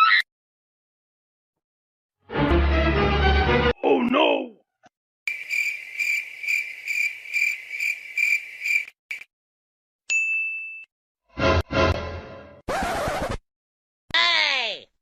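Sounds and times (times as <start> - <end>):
crickets chirping: 5.3 - 9.2.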